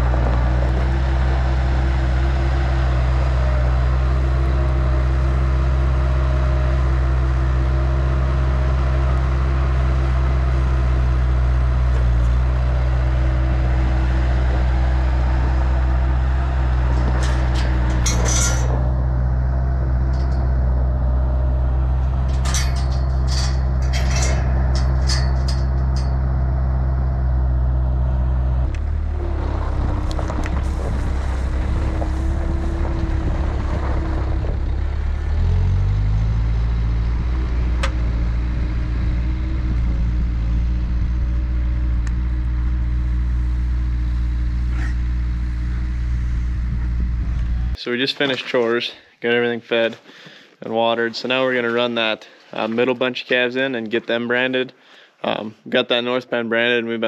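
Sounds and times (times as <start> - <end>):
vehicle engine humming: 0.0 - 47.8
sharp clicks and knocks: 16.9 - 19.0, 19.9 - 20.6, 22.0 - 26.4.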